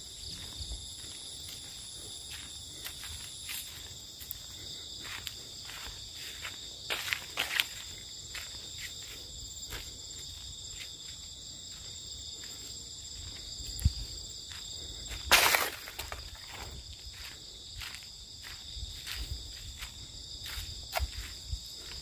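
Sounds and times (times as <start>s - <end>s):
crickets trilling: 0.0s - 22.0s.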